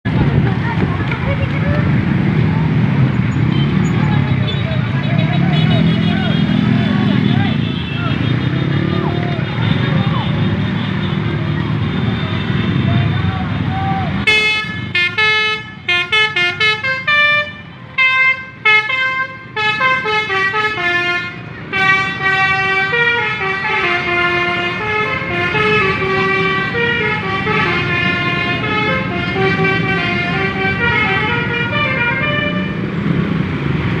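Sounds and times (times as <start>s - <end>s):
musical horn playing tune: 14.3s - 32.9s.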